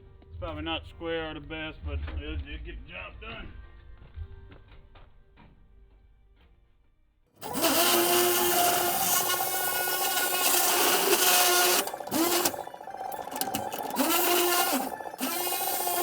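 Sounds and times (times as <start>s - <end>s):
power tool cutting sheet metal: 7.4s - 16.0s.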